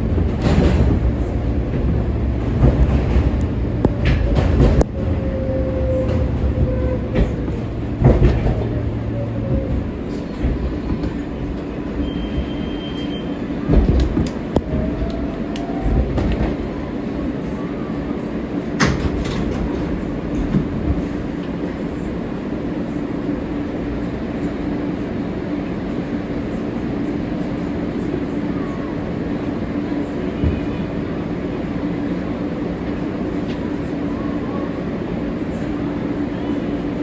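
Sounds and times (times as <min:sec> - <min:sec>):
subway train rumbling: 0:00.0 - 0:37.0
high wheel squeal: 0:12.0 - 0:13.4.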